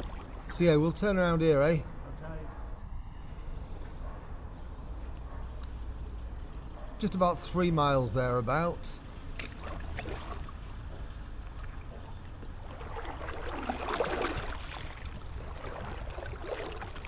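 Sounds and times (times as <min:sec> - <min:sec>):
paddle splashing in water: 0:00.0 - 0:00.5, 0:09.4 - 0:17.0
water dripping from paddle: 0:00.0 - 0:00.7, 0:09.2 - 0:17.0.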